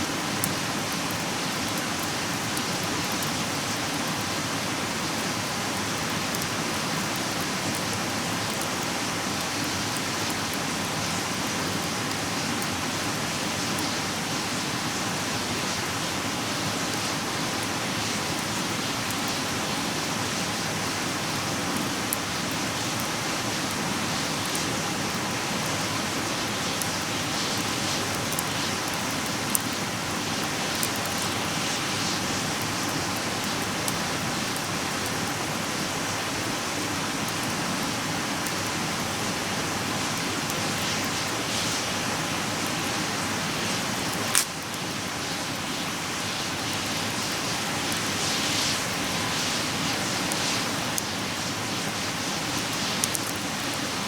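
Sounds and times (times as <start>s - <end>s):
campfire hissing: 0.0s - 54.0s
fire crackling and popping: 0.0s - 54.0s.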